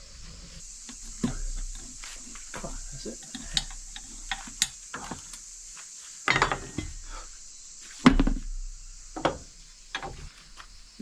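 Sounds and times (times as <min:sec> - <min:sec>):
tools knocking and clunking: 0:00.8 - 0:05.4, 0:06.3 - 0:07.0, 0:08.0 - 0:10.3
heavy thud: 0:08.0 - 0:09.5.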